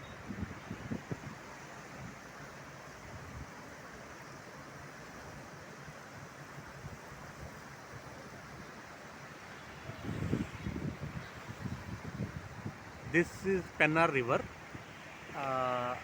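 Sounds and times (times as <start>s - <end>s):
wind buffeting microphone: 0.0s - 2.2s, 9.7s - 15.0s
river rushing: 0.0s - 16.0s.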